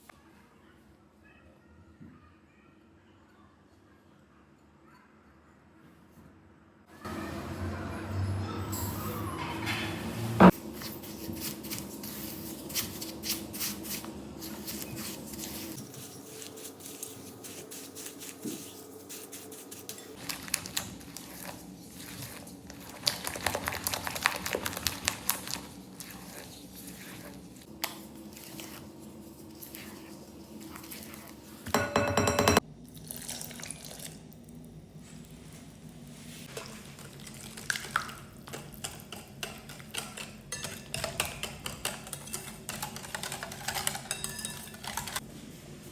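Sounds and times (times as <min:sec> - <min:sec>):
utensils clinking against dishes: 0:31.6 - 0:32.6, 0:38.5 - 0:45.2.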